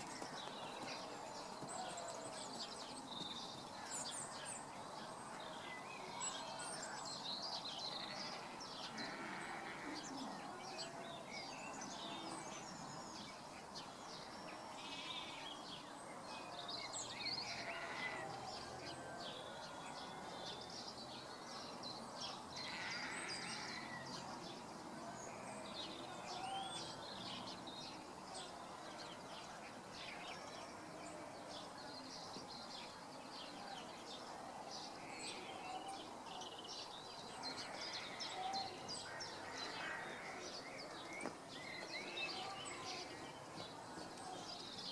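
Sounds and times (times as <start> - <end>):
birds chirping and calling: 16.8 - 21.7, 22.3 - 44.9.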